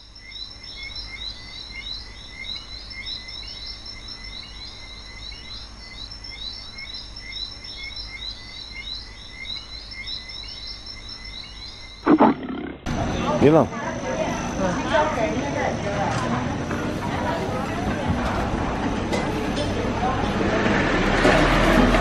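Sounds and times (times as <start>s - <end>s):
quick repeating animal chirps: 12.1s - 12.9s.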